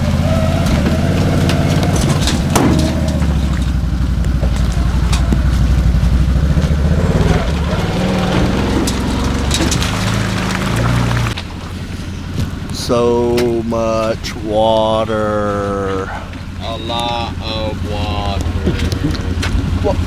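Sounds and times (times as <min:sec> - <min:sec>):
clicks and knocks: 0:00.0 - 0:11.4
motor engine droning: 0:00.0 - 0:20.0.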